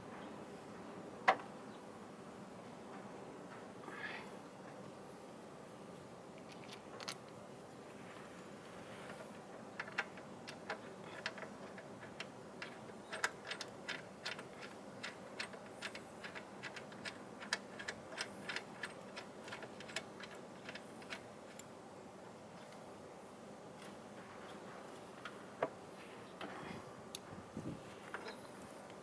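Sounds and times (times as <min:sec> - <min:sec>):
spanner clicking on bolt: 0:09.8 - 0:21.7.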